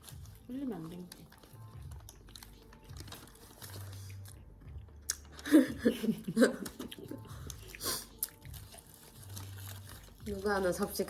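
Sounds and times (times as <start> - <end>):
crisp crackling chewing: 0.0 - 11.0
crunching bite into bread: 7.5 - 10.2.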